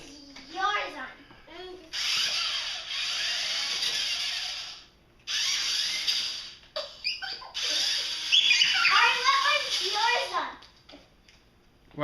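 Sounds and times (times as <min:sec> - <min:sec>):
child's voice: 0:00.0 - 0:02.0, 0:08.7 - 0:10.7
toy car motors whirring: 0:01.9 - 0:10.7.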